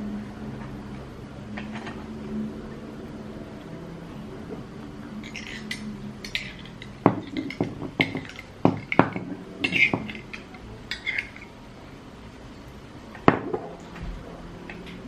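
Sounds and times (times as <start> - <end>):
cutlery clinking and knocking: 5.2 - 11.5.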